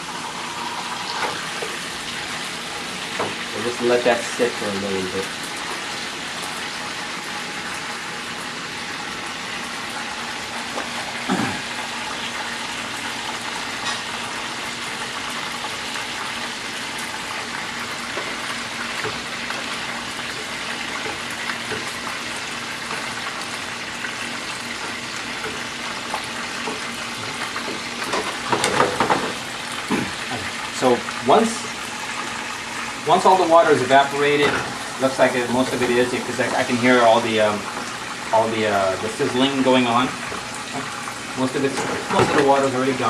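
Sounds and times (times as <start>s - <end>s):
pan drippings sizzling: 0.0s - 43.0s.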